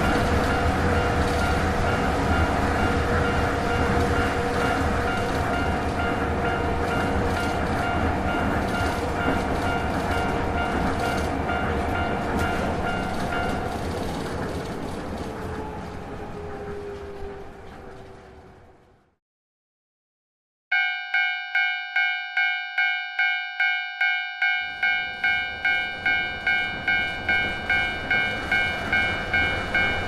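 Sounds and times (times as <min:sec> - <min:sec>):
train rumbling over rails: 0:00.0 - 0:19.2, 0:24.4 - 0:30.0
level crossing bell ringing: 0:20.7 - 0:30.0.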